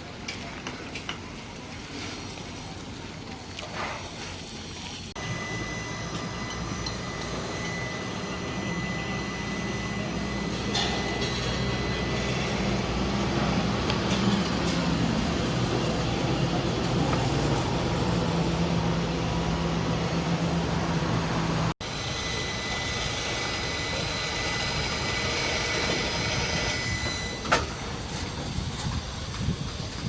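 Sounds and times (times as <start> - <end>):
thin high whine: 5.2 - 15.1, 17.4 - 29.0
low engine rumble: 5.2 - 30.0.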